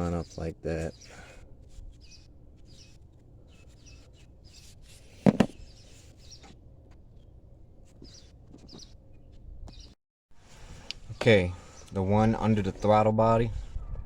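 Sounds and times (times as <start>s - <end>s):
small birds chirping: 0.0s - 10.0s, 11.1s - 12.6s.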